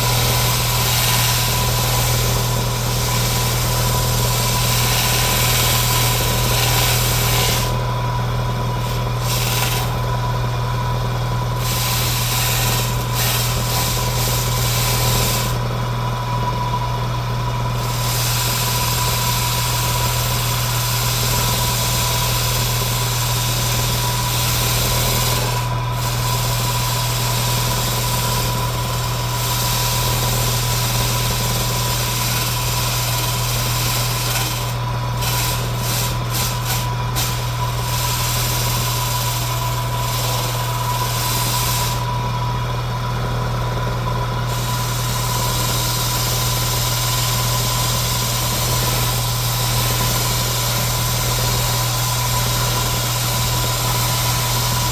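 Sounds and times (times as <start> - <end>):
electric power tool humming and whining: 0.0 - 54.9
cutting or sanding hiss: 32.0 - 42.1.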